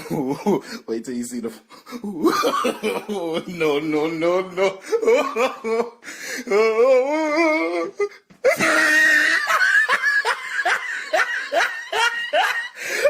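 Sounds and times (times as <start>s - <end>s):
person laughing: 0.0s - 0.7s, 1.9s - 13.0s
wavering vocal sound: 6.4s - 9.2s.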